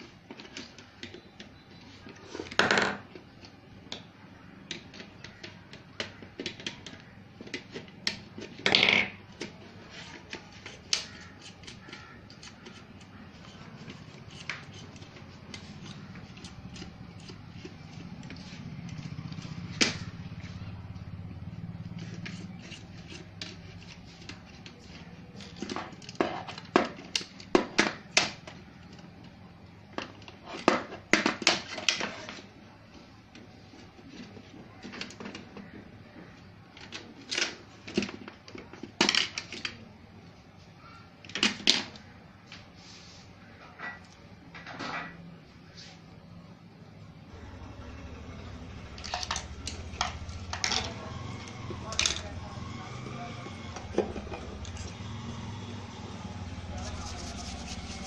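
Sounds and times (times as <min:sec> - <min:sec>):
tools clicking and tapping: 0:00.3 - 0:20.5, 0:48.8 - 0:55.1.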